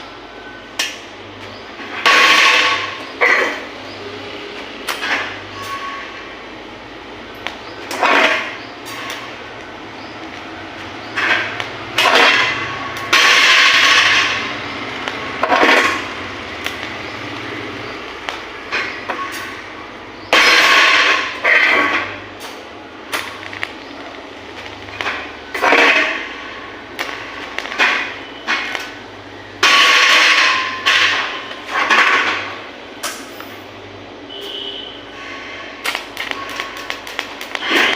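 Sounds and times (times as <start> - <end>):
sharp metallic knocks: 11.0 - 23.6.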